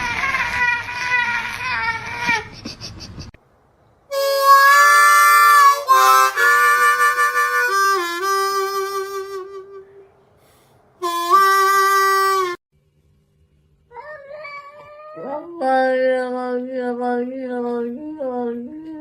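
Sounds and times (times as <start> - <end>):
harmonica playing held chords: 4.1 - 10.0, 11.0 - 12.6.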